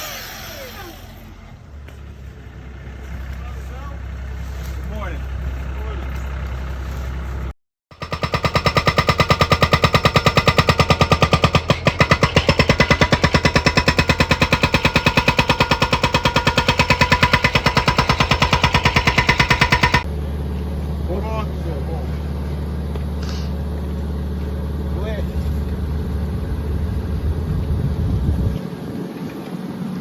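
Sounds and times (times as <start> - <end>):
air tool hammering rapidly: 7.9 - 20.1.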